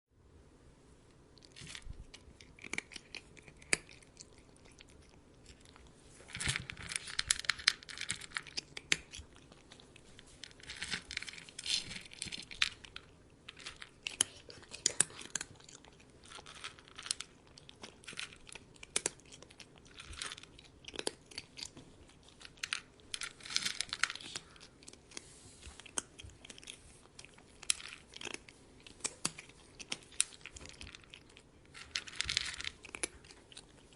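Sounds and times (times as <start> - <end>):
cat crunching food: 1.4 - 33.9.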